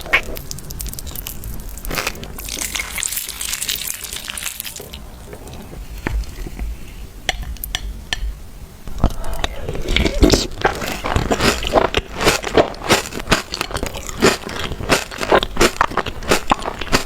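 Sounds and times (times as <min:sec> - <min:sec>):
chocolate being bitten and crunched: 0:09.9 - 0:17.0.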